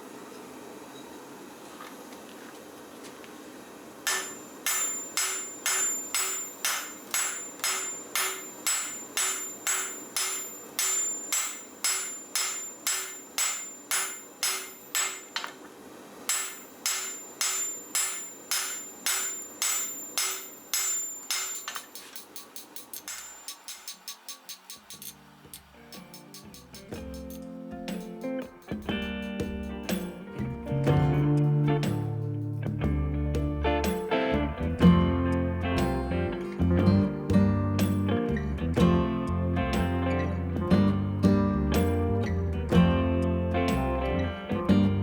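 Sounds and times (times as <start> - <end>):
steady background noise: 0.0 - 45.0
hammer ringing on anvil: 4.1 - 15.5, 16.3 - 25.2.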